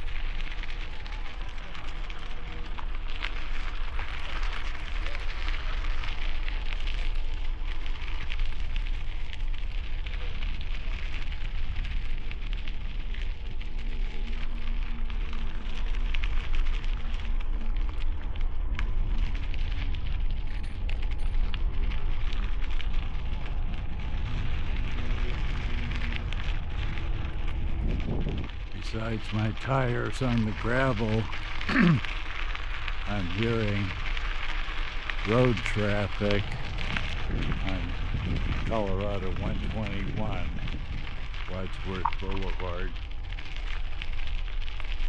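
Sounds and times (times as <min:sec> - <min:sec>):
bicycle tires on gravel: 0:00.0 - 0:45.0
wind buffeting microphone: 0:21.3 - 0:31.6, 0:32.6 - 0:43.2.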